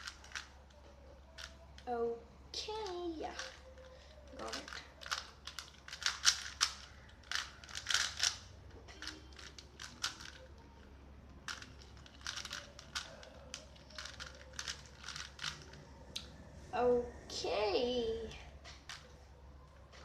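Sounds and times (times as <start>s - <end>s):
puzzle cube plastic clicking: 0.0s - 1.9s, 2.8s - 10.8s, 11.4s - 16.2s.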